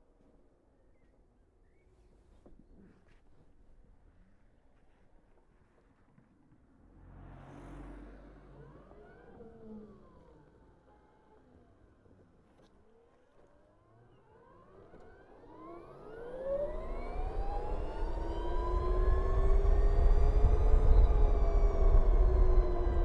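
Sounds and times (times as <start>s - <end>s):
electric scooter motor whine: 8.6s - 12.3s, 12.9s - 23.0s
wind and road rumble: 16.0s - 23.0s.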